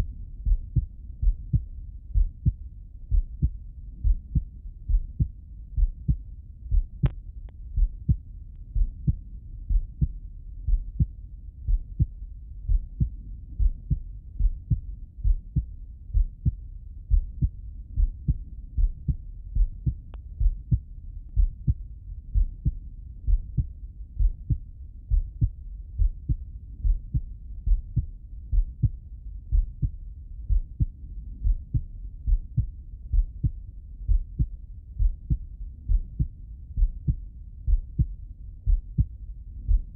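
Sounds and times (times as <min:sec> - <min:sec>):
heartbeat thumps: 0:00.4 - 0:39.9.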